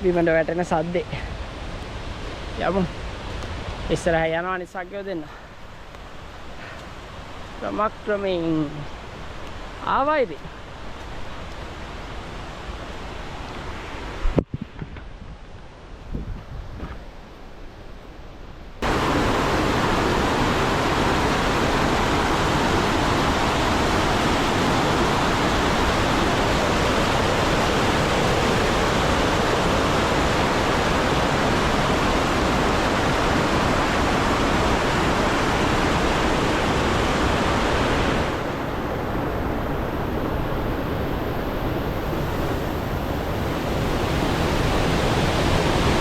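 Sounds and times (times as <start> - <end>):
waterfall rushing: 18.8 - 46.0.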